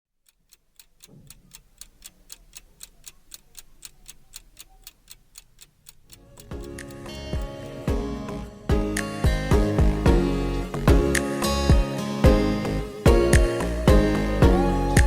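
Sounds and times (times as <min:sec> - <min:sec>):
clock ticking: 0:00.2 - 0:15.0
music: 0:06.2 - 0:15.0.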